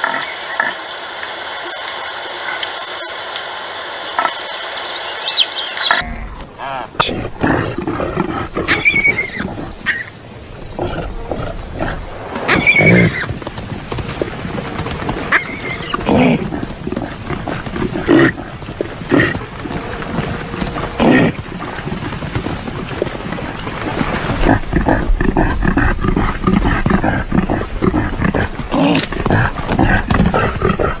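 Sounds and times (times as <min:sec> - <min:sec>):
reindeer grunting: 0:24.3 - 0:31.0.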